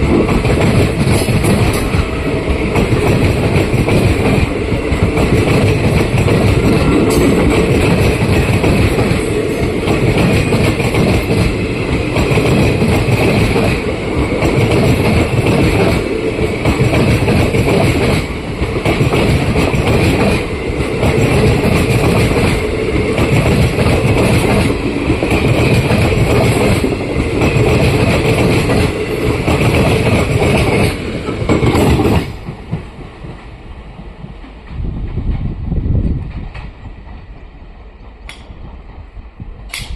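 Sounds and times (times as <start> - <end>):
train wheels clattering over rails: 0.0 - 39.9.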